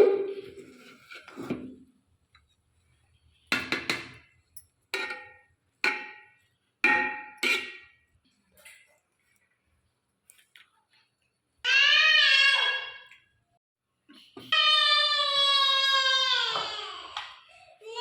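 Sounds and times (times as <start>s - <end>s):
kitchenware clinking: 3.5s - 8.9s.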